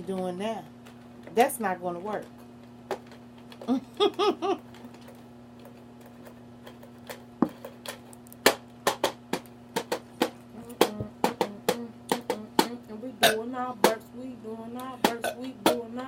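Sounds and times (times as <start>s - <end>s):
low steady hum: 0.0s - 16.0s
person laughing: 3.6s - 4.7s.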